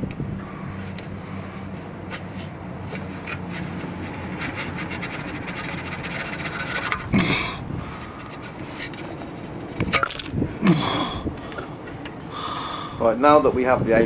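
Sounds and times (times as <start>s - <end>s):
sensor scraping out of metal bore: 1.3s - 10.1s.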